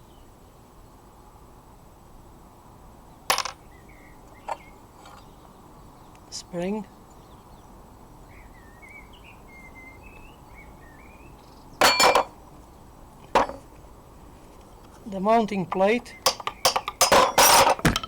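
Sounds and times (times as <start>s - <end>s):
iron parts clanking on metal: 4.4s - 5.3s, 11.8s - 12.4s, 13.2s - 13.7s, 15.3s - 18.0s.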